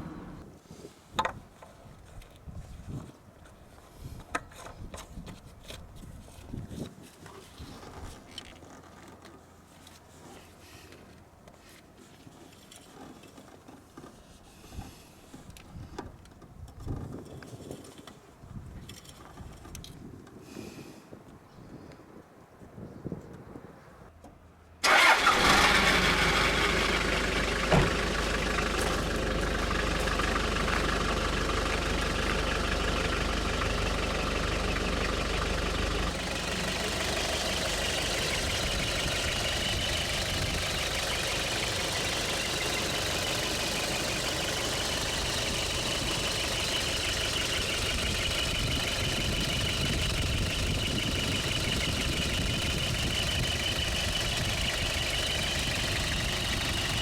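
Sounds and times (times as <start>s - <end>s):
engine starting and idling: 0.0s - 0.4s, 24.8s - 57.0s.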